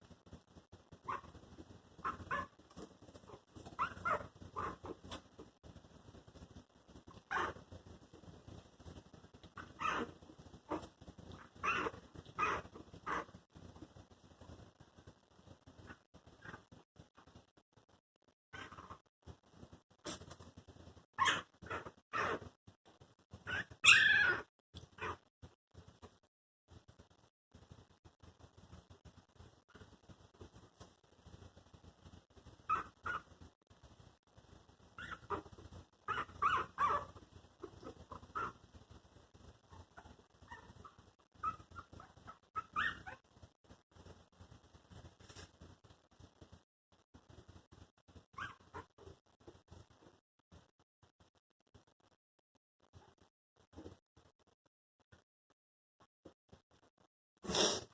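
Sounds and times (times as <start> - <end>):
puppies whimpering and squeaking: 3.2 - 5.0, 9.6 - 10.1, 23.5 - 25.2, 35.0 - 35.5, 36.1 - 38.6, 39.7 - 43.2, 48.4 - 48.9
puppies squeaking and whimpering: 23.5 - 25.2, 39.8 - 43.2.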